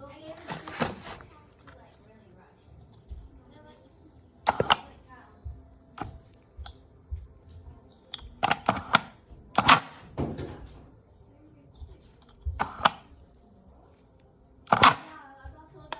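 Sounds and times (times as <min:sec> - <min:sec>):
hard parts clicking and knocking: 0:04.4 - 0:11.0, 0:14.6 - 0:15.9.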